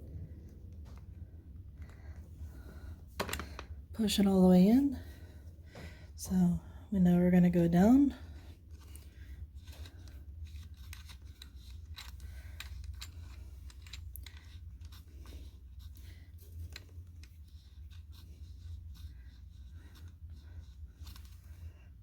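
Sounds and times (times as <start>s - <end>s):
low hum: 0.0s - 22.0s
connector clicks and scratches: 8.7s - 15.1s.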